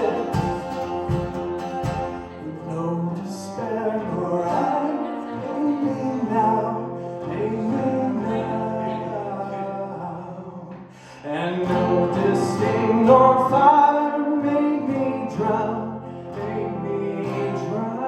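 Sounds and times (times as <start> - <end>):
live band playing: 0.0 - 2.5
person singing drawn-out notes: 0.0 - 18.0
low drum thumps: 0.2 - 2.3.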